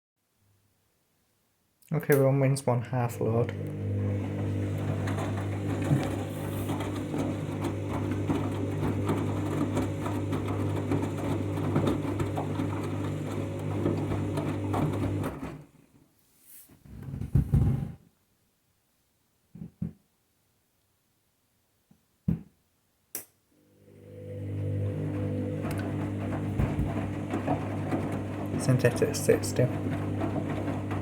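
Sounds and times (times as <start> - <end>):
washing machine motor humming: 2.3 - 15.8, 23.6 - 31.0.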